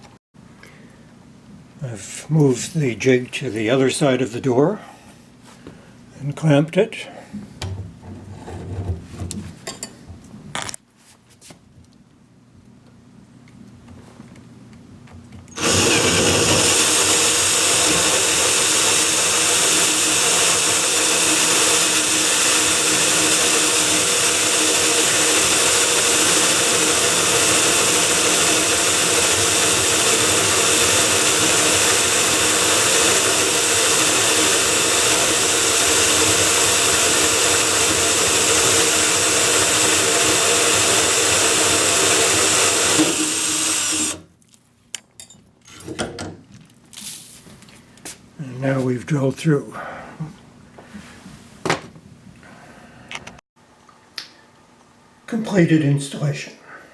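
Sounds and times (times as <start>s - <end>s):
power drill cutting through wood: 15.6s - 44.2s.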